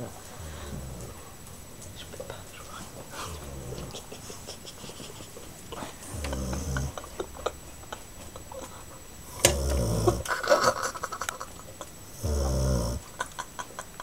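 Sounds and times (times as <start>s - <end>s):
pet snoring: 0.0s - 1.6s, 2.8s - 4.1s, 6.0s - 7.0s, 9.2s - 10.4s, 12.1s - 13.1s.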